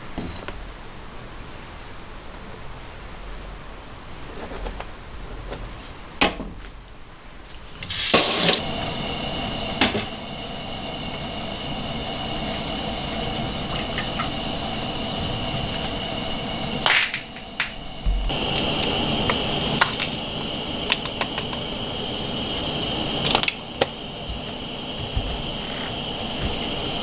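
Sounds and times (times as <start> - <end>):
water running from a tap: 7.7 - 27.0.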